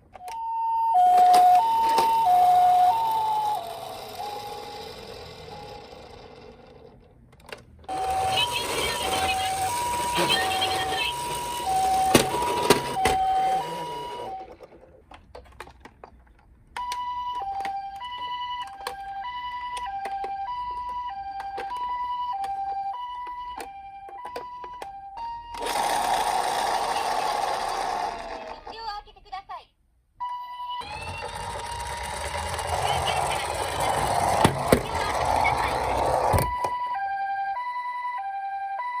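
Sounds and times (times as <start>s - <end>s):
toy siren two tones alternating: 0.2s - 6.7s, 7.9s - 14.7s, 16.8s - 27.9s, 30.2s - 39.0s
plastic rattle and clicks: 14.5s - 17.8s.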